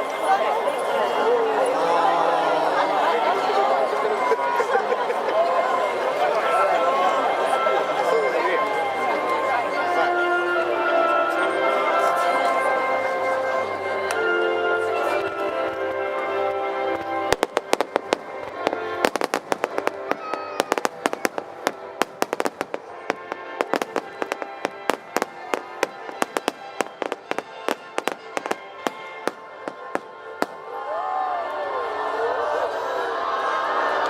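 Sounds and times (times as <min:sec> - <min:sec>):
crowd cheering: 0:00.0 - 0:10.8, 0:17.3 - 0:34.0
music: 0:00.0 - 0:34.0
fireworks bangs: 0:17.3 - 0:30.7.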